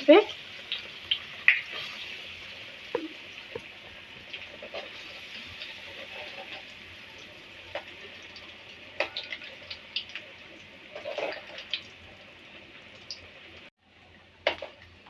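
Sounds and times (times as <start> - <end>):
food deep-frying in hot oil: 0.0 - 15.0
oil crackling and popping: 0.5 - 12.2, 14.4 - 15.0.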